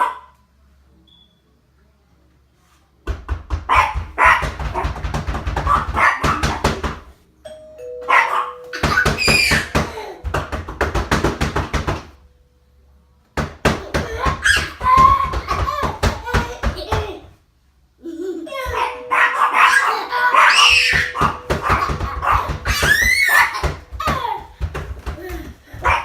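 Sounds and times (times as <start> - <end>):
dog barking: 0.0 - 0.4, 3.7 - 5.0, 5.6 - 6.8, 8.1 - 9.0, 18.7 - 23.6
two-tone doorbell chime: 7.4 - 9.8, 18.7 - 23.0.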